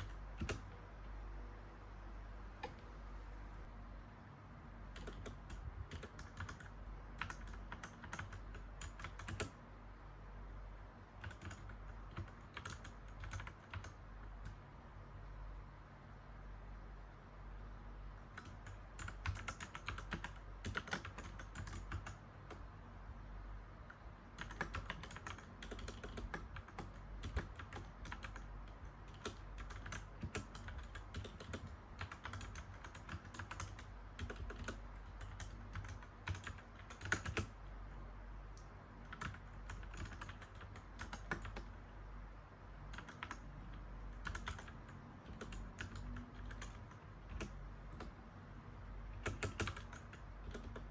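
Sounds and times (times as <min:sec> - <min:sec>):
mechanical keyboard typing: 0:00.0 - 0:00.8, 0:04.9 - 0:09.6, 0:11.1 - 0:14.8, 0:18.2 - 0:22.7, 0:23.8 - 0:37.8, 0:38.5 - 0:42.0, 0:42.9 - 0:48.2, 0:49.0 - 0:50.9.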